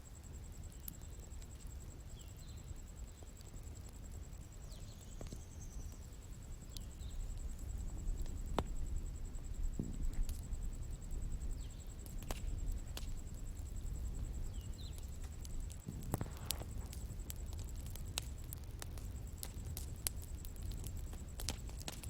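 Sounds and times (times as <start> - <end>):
bonfire crackling: 0.1 - 22.0.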